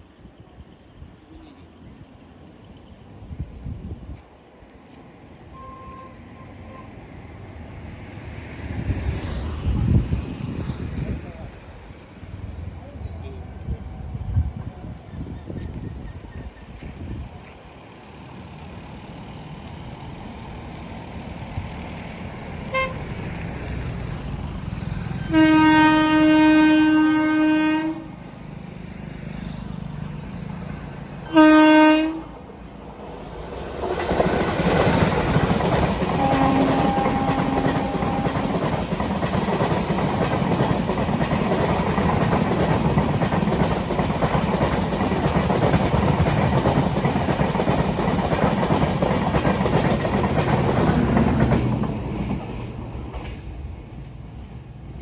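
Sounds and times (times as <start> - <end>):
train rumbling: 0.0 - 55.0
train horn blasts: 5.5 - 6.9, 22.6 - 23.2, 25.2 - 28.2, 31.3 - 32.5, 36.1 - 38.6
wheels rushing on rails: 6.1 - 55.0.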